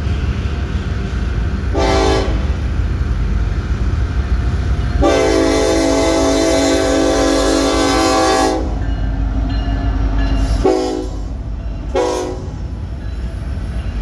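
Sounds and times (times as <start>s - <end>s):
train rumbling: 0.0s - 14.0s
locomotive horn blasts: 1.8s - 2.6s, 5.0s - 8.8s, 10.6s - 12.6s.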